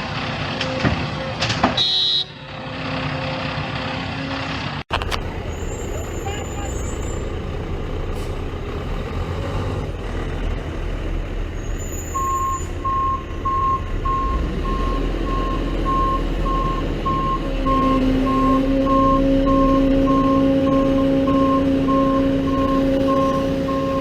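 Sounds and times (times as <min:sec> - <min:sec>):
heavy diesel machinery rumbling: 0:00.0 - 0:24.0
reversing alarm beeping: 0:12.1 - 0:24.0
loud engine drone: 0:13.3 - 0:24.0.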